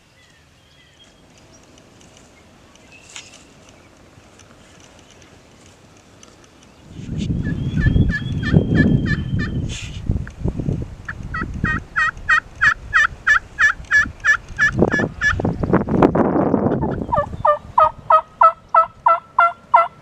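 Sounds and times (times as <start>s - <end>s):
turkey yelps: 11.3s - 15.4s, 16.8s - 19.9s.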